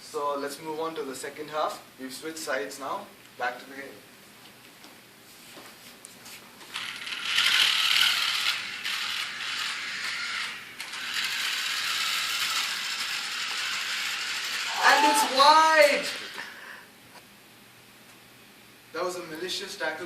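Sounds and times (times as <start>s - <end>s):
toy car motors whirring: 6.7s - 16.5s.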